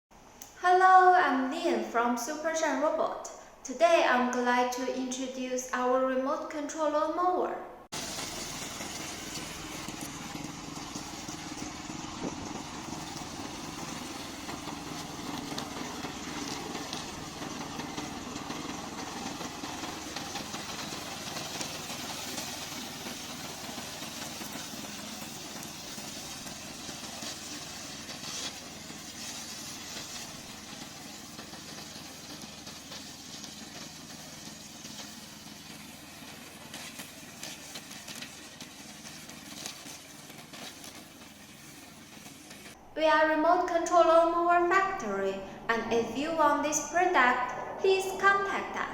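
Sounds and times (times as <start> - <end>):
lawn mower running: 7.9 - 42.8.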